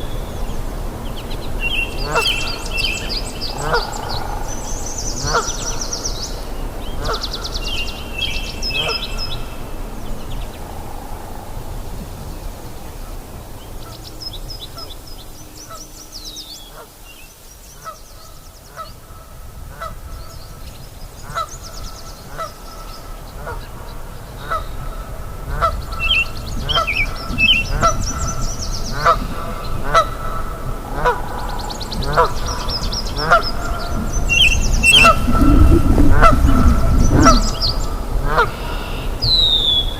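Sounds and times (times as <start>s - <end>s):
trilling bird calls: 1.6s - 6.0s, 26.0s - 39.9s
stream rushing: 2.2s - 4.5s, 33.6s - 39.3s.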